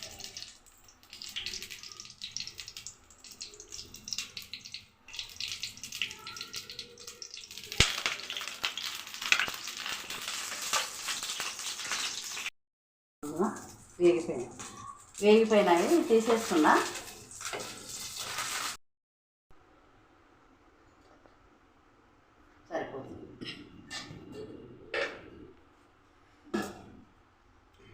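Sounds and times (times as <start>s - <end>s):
vegetables sizzling in hot oil: 0.0s - 12.5s, 13.2s - 18.8s.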